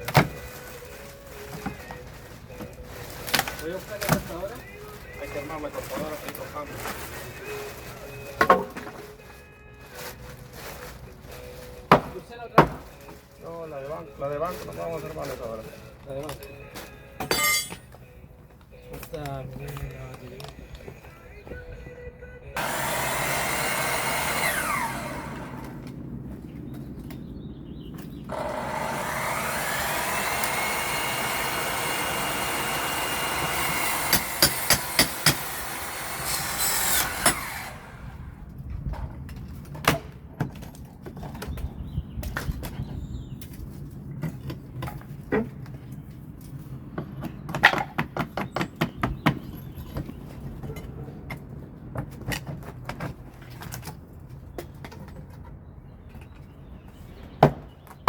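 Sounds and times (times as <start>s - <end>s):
power saw cutting wood: 22.6s - 25.9s, 28.3s - 38.2s.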